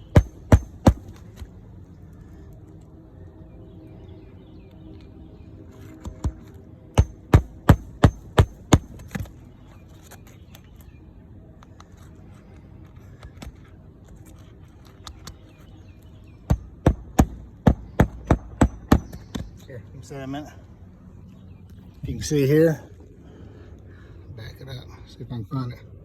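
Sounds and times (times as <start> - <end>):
hammer strikes: 0.0 - 1.2, 6.0 - 9.3, 16.5 - 19.5.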